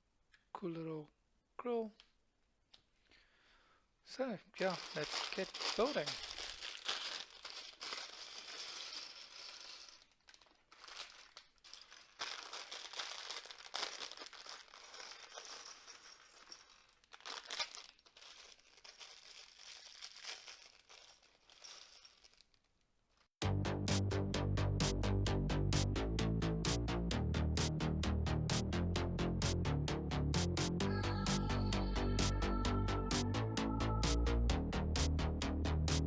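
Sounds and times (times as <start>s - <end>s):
plastic bags crinkling: 4.6s - 23.3s.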